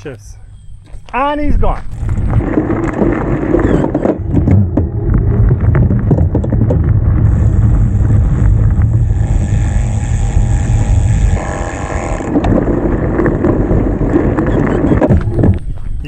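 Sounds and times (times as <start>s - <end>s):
tyre noise on dirt: 0.7s - 16.0s
wind rumble on microphone: 1.4s - 16.0s
bike knocks and rattles: 1.9s - 9.1s.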